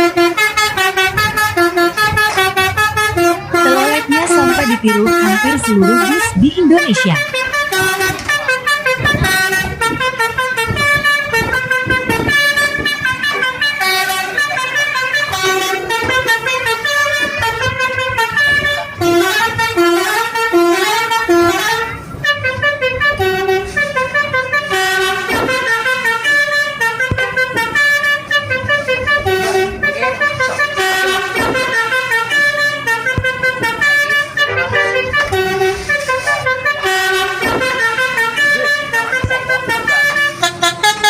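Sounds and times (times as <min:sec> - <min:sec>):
multi-tone bus horns playing tunes: 0:00.0 - 0:41.0.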